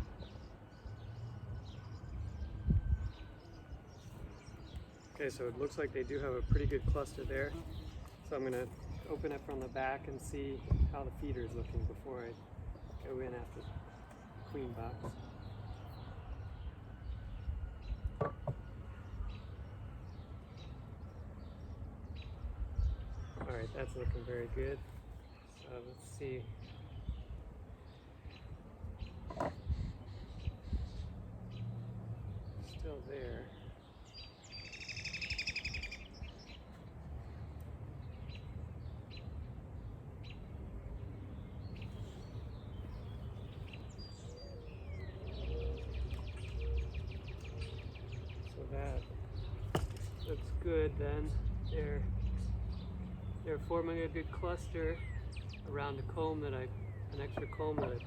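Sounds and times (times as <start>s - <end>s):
small birds chirping: 0.0s - 58.0s
sharp knocks on wooden beehive: 49.7s - 50.3s.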